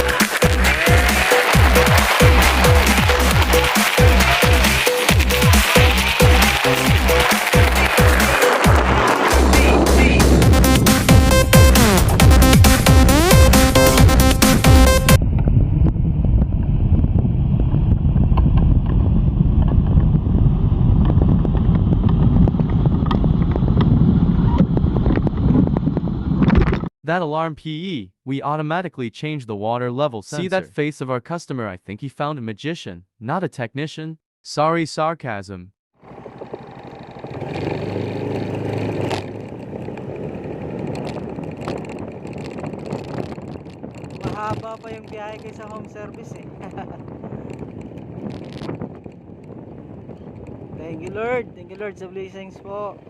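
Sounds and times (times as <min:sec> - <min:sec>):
vehicle road and wind noise: 0:00.0 - 0:26.9, 0:36.0 - 0:53.0.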